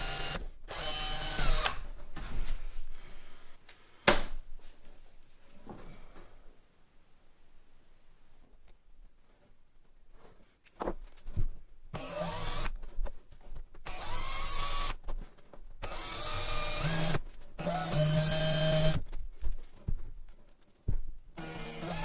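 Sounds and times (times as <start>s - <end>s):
electric drill whining: 0.0s - 1.8s, 12.0s - 12.8s, 13.8s - 15.0s, 15.8s - 19.0s, 21.4s - 22.0s.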